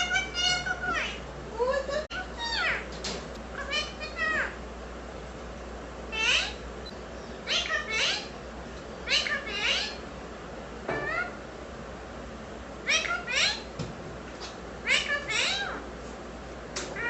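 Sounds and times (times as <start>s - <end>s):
parakeet chattering: 0.0s - 1.3s, 2.1s - 2.9s, 3.5s - 4.6s, 6.1s - 8.4s, 9.0s - 10.1s, 10.9s - 11.5s, 12.8s - 13.7s, 14.8s - 15.8s.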